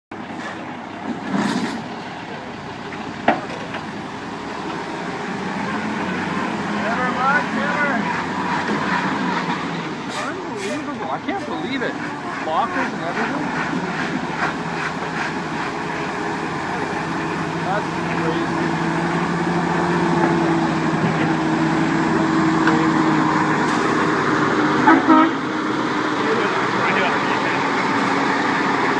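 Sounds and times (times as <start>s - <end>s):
heavy truck engine running: 0.1s - 28.9s.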